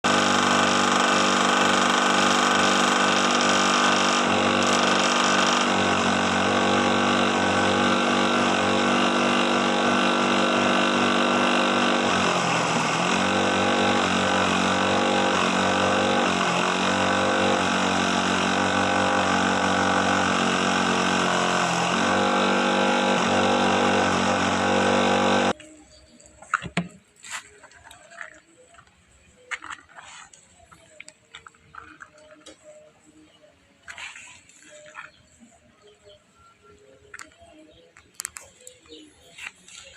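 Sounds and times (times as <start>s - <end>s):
chopping machine running: 0.0s - 25.6s.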